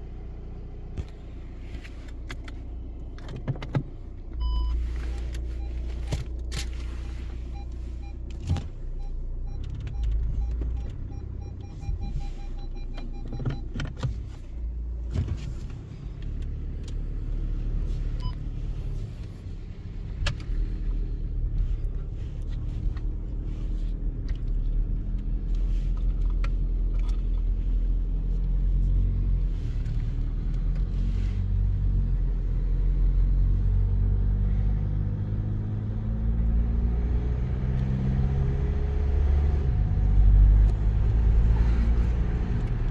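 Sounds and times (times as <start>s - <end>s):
car engine and road rumble: 0.0s - 42.9s
short beeps: 8.9s - 13.6s.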